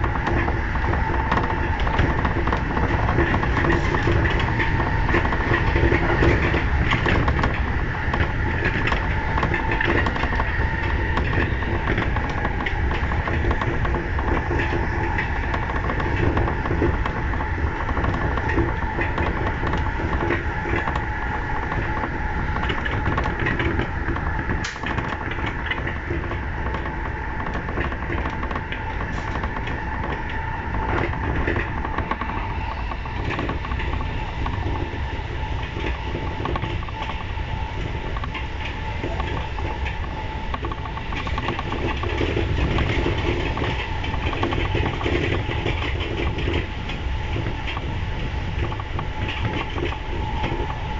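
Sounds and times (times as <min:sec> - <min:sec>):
train wheels rumbling on rails: 0:00.0 - 0:50.9.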